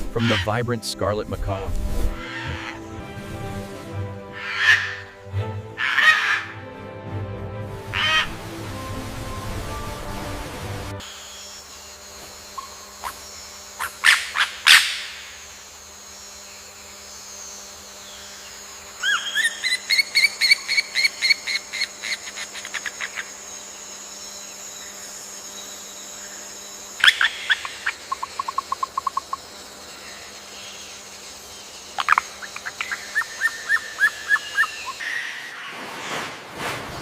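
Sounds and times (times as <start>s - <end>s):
faint steady hum: 11.0s - 35.2s.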